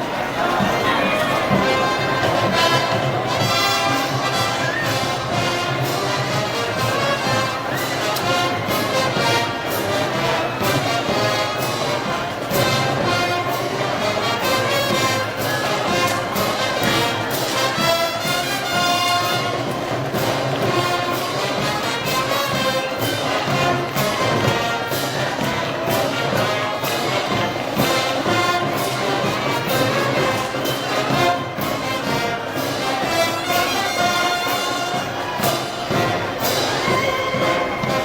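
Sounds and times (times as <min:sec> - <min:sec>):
brass band playing a march: 0:00.0 - 0:38.0.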